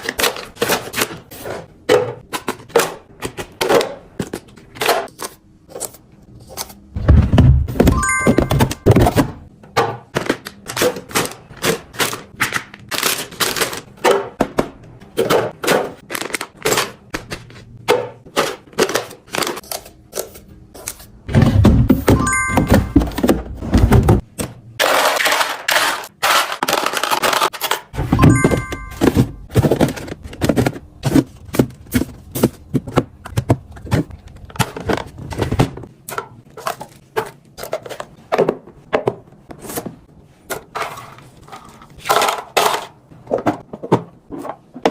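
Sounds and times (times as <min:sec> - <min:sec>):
containers clicking and thunking: 0:24.8 - 0:39.4.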